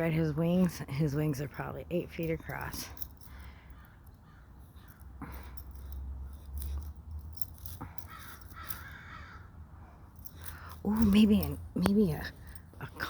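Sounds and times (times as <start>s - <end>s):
crows cawing: 3.7s - 5.0s, 8.1s - 9.6s.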